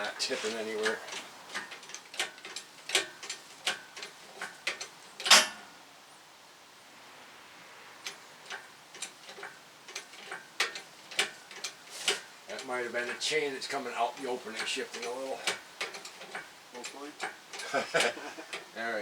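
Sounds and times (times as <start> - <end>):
light metallic clicks and ticks: 0.0 - 5.8, 8.0 - 19.0
loud metallic clunk: 5.2 - 5.8.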